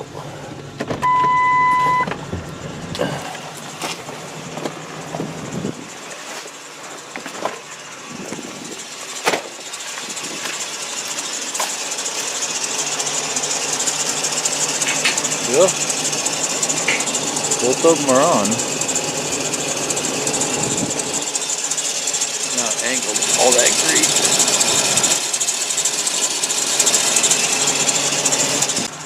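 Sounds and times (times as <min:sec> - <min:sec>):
electronic beep: 0:01.0 - 0:02.1
sharp clicks and knocks: 0:14.7 - 0:15.4, 0:16.7 - 0:17.2.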